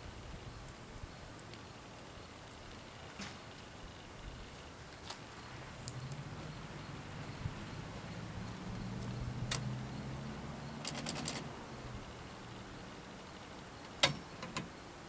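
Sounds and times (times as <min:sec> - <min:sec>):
typewriter mechanism clicking: 0:10.8 - 0:11.5.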